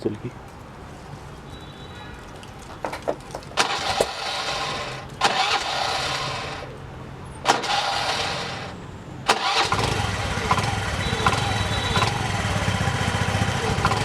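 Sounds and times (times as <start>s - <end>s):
scooter engine revving: 3.6s - 6.8s, 7.4s - 14.0s
exhaust whistle hissing: 10.6s - 13.0s.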